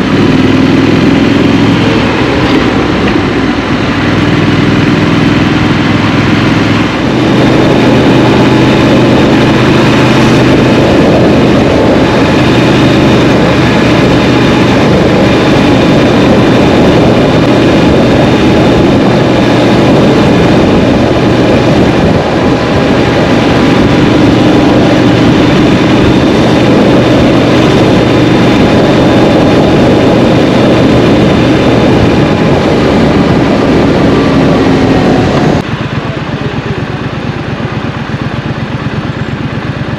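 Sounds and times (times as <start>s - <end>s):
motorcycle engine running: 0.0s - 39.9s
wind rush on microphone: 0.0s - 39.9s.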